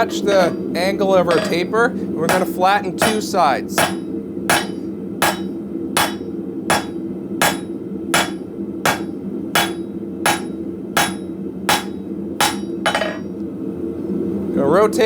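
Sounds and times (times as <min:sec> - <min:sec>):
hammer striking steel on anvil: 0:00.3 - 0:00.7, 0:01.3 - 0:01.7, 0:02.3 - 0:13.3.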